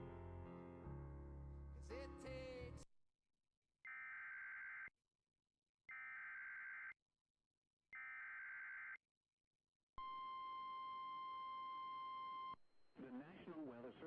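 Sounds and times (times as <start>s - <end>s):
piano music: 0.0s - 2.8s.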